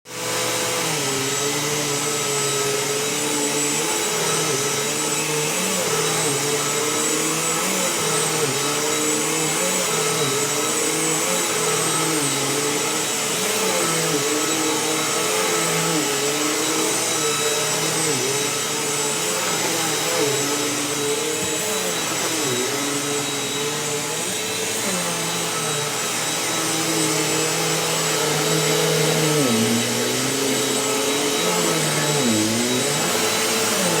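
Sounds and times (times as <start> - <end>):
vacuum cleaner running: 0.1 - 34.0.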